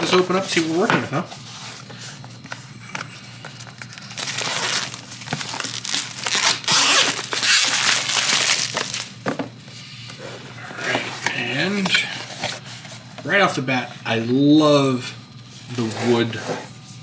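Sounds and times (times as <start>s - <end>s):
packaging rustling and tearing: 3.0s - 9.4s.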